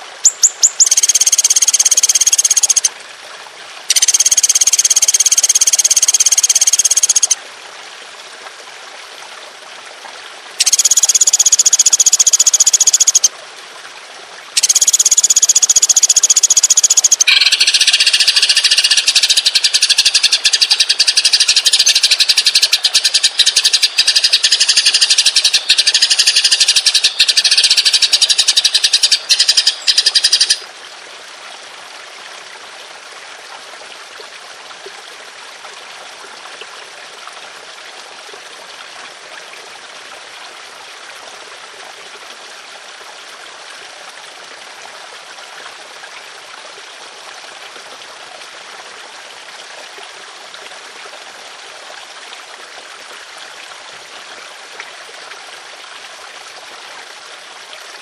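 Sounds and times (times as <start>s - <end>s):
songbird trilling: 0.2s - 2.9s, 3.9s - 7.4s, 10.6s - 13.3s, 14.6s - 30.6s.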